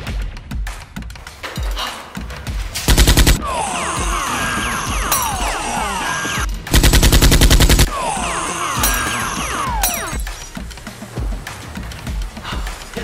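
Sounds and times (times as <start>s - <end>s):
background music: 0.0s - 13.0s
machine-gun fire: 2.9s - 3.4s, 6.7s - 7.9s.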